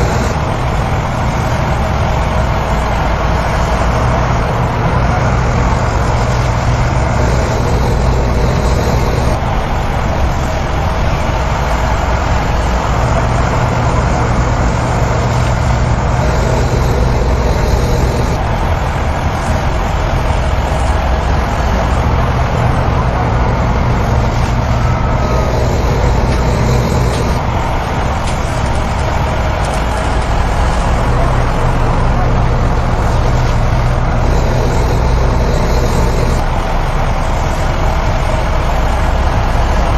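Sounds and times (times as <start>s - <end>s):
heavy diesel machinery droning: 0.0s - 39.9s.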